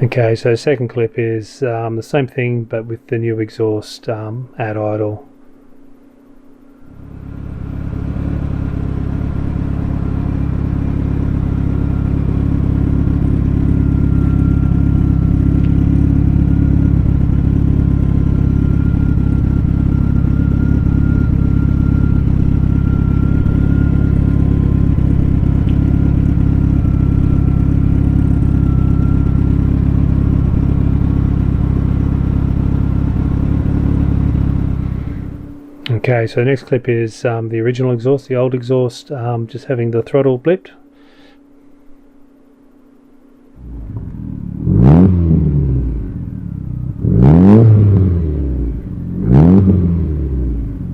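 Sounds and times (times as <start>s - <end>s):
car engine idling: 5.0s - 36.6s, 40.8s - 50.9s.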